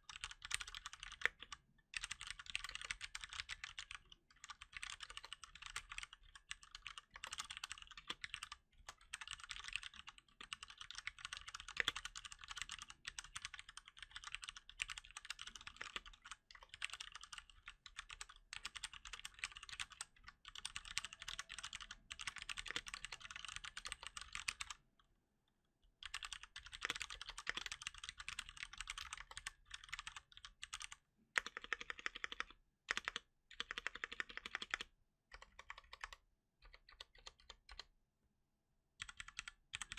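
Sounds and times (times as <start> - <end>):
mechanical keyboard typing: 0.0 - 24.8, 26.0 - 37.9, 39.0 - 39.9.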